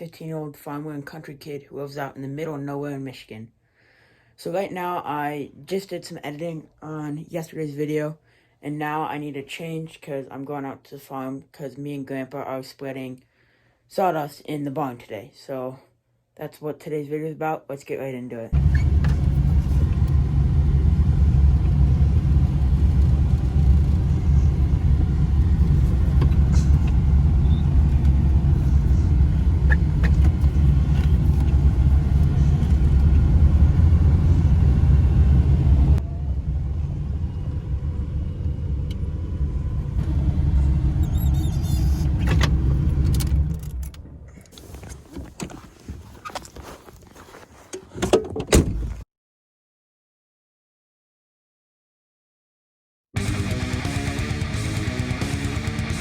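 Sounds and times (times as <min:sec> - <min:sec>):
vehicle engine low rumble: 0:18.6 - 0:47.3.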